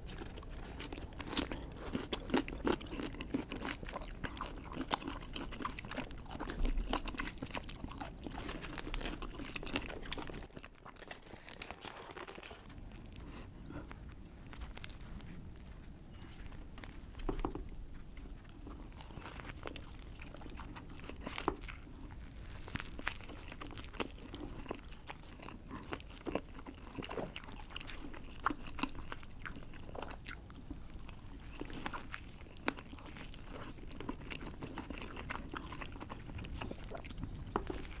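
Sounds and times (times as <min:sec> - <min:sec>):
pickle crunching being chewed: 0:00.0 - 0:38.0.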